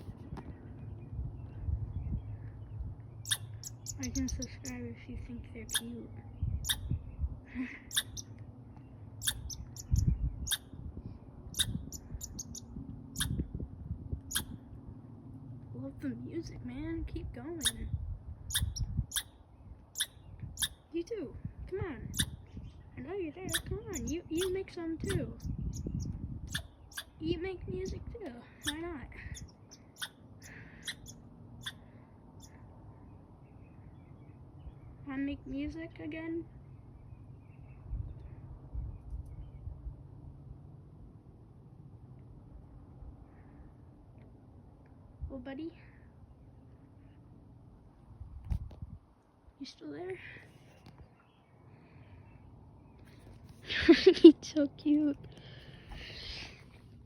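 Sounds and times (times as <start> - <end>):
small animal chirping: 3.2 - 4.8, 5.6 - 6.0, 6.6 - 7.0, 7.9 - 8.4, 9.2 - 10.7, 11.5 - 13.4, 14.3 - 14.6, 17.6 - 17.9, 18.5 - 20.8, 22.1 - 22.4, 23.4 - 27.2, 28.6 - 31.8.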